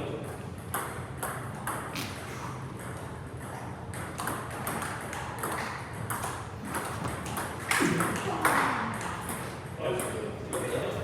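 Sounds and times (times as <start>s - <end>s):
ping pong ball clicking: 0.7s - 1.9s, 3.9s - 10.8s.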